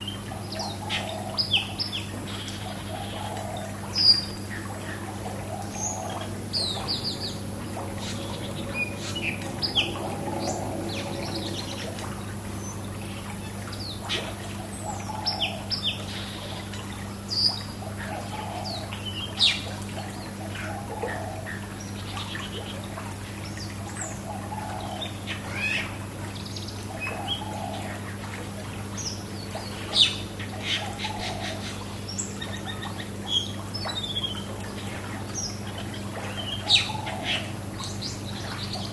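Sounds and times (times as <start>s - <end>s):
small birds chirping: 0.0s - 16.0s
water splashing and trickling: 0.0s - 38.9s
low hum: 3.6s - 17.1s.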